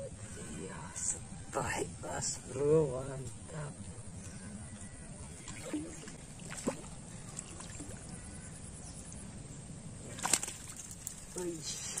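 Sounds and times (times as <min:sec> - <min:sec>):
water splashing and sloshing: 0:05.2 - 0:08.7, 0:09.9 - 0:12.0.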